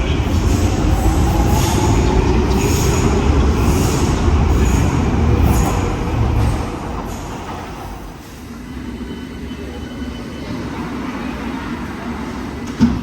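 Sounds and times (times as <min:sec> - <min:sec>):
train running rumble: 0:00.0 - 0:08.4.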